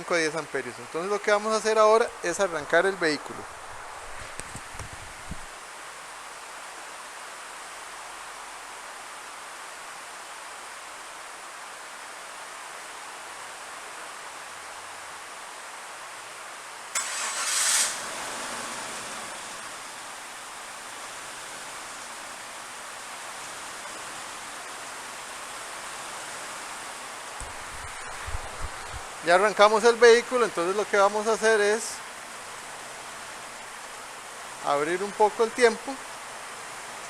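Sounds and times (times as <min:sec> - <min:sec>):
steady hiss: 0:00.0 - 0:37.0
engine cranking and starting: 0:17.0 - 0:18.8.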